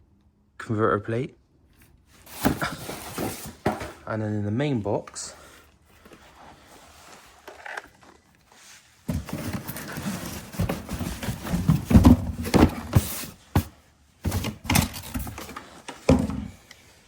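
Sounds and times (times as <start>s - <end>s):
cardboard box being opened: 2.2s - 4.0s, 6.0s - 13.7s.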